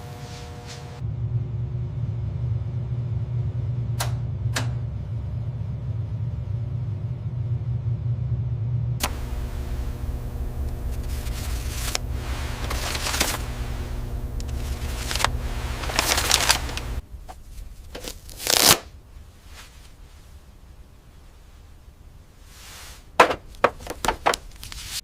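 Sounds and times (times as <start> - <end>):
small machine humming: 0.0 - 3.8, 9.0 - 17.0
rasping rustling noises: 9.1 - 20.3, 22.4 - 25.0.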